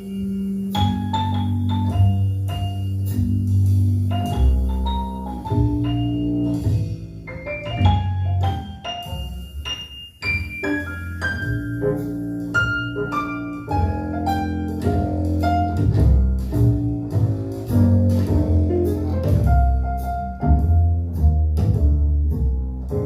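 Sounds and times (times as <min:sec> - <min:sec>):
plucked double bass: 0:00.0 - 0:09.7, 0:10.3 - 0:23.0
piano: 0:00.0 - 0:23.0
bowed strings: 0:10.6 - 0:23.0.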